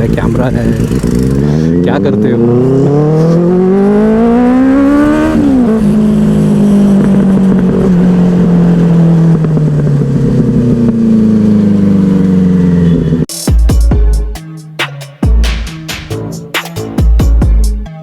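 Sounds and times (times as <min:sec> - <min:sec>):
motorcycle engine accelerating: 0:00.0 - 0:13.3.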